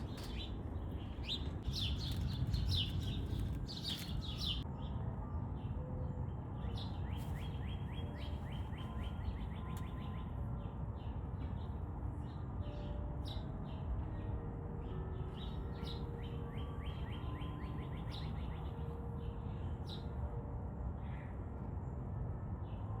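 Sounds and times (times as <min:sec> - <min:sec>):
birds singing: 0:00.0 - 0:04.7, 0:06.6 - 0:20.2
low outdoor rumble: 0:00.0 - 0:06.3.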